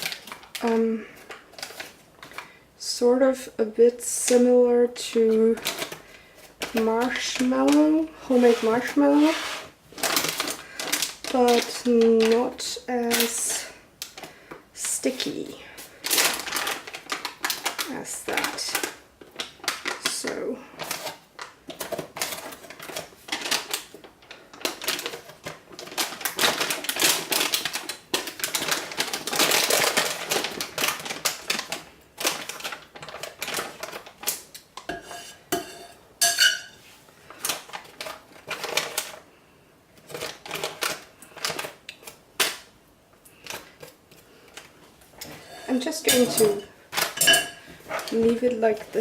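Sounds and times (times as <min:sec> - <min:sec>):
spatula scraping and tapping: 0:34.8 - 0:36.9.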